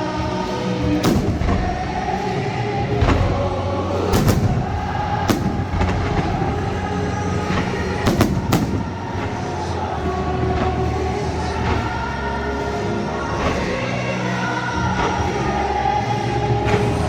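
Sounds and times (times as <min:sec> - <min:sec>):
music playing: 0:00.0 - 0:17.0
fireworks bangs: 0:00.9 - 0:10.2.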